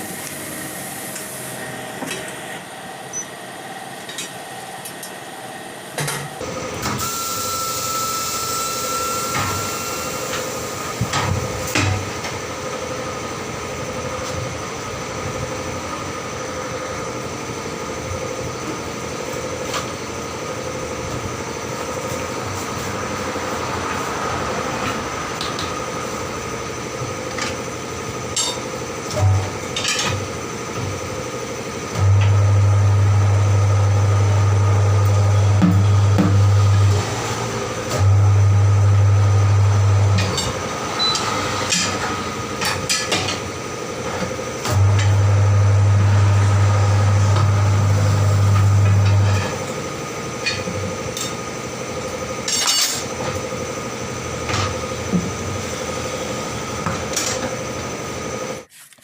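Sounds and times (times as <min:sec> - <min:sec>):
electric motor hum: 0:31.9 - 0:42.6, 0:44.6 - 0:50.2.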